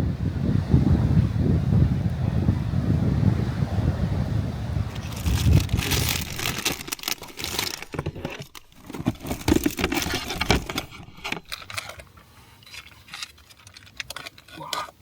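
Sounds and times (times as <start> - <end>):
handling rustling: 4.9 - 15.0
sharp clicks and light knocks: 5.9 - 15.0.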